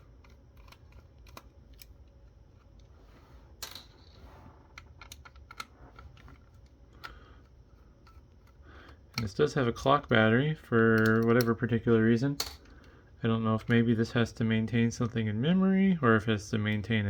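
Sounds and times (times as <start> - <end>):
plastic parts clicking and tapping: 0.0 - 2.9, 4.7 - 10.2, 10.9 - 11.7
steady low hum: 0.0 - 17.0.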